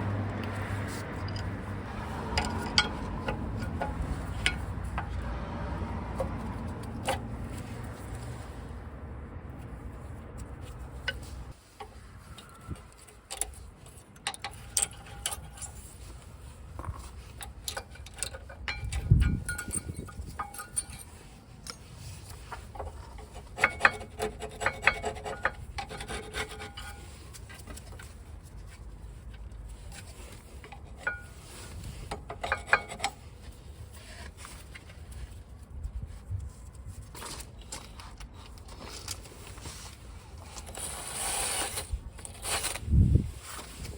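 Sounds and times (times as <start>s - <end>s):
tools scraping on metal: 0.6s - 5.3s, 10.7s - 28.1s, 29.8s - 35.3s
metal clinks and knocks: 1.0s - 5.3s, 16.8s - 27.0s
short metallic rings: 18.6s - 21.2s.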